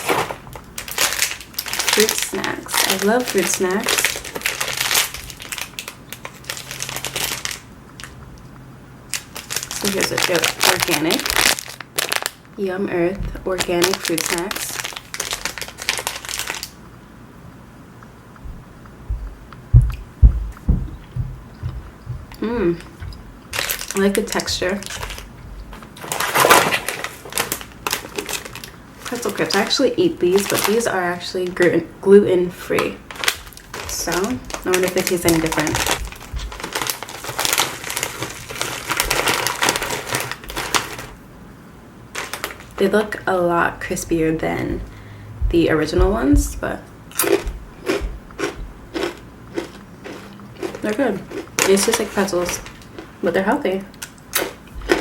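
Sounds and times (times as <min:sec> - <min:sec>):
wrapper crinkle: 0:00.0 - 0:08.2, 0:09.1 - 0:12.6, 0:13.4 - 0:16.8, 0:23.5 - 0:31.7, 0:32.8 - 0:41.2, 0:42.1 - 0:43.0, 0:51.6 - 0:53.1
chewing gummy snacks: 0:00.8 - 0:08.3, 0:09.1 - 0:12.5, 0:13.3 - 0:16.8, 0:21.1 - 0:30.9, 0:32.8 - 0:41.1, 0:46.0 - 0:53.3, 0:53.9 - 0:55.0.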